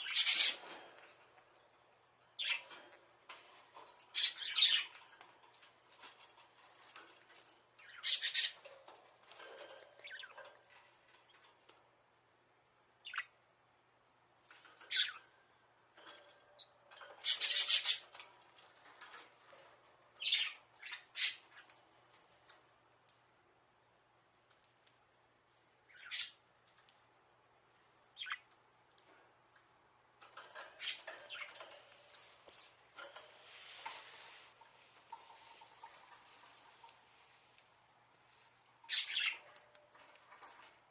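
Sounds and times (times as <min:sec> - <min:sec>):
budgerigars chirping: 0:00.0 - 0:00.7, 0:07.8 - 0:08.6, 0:28.2 - 0:28.5.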